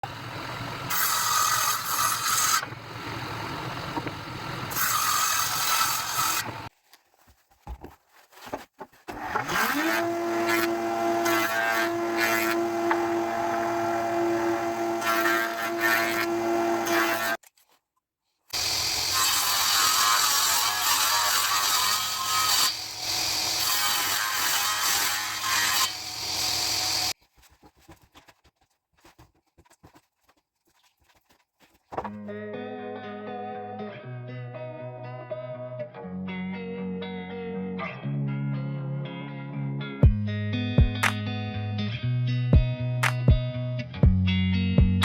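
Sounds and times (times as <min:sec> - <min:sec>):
machine humming: 0:00.0 - 0:04.8
power tools cutting wood: 0:00.0 - 0:06.7, 0:09.1 - 0:17.4, 0:18.6 - 0:27.2.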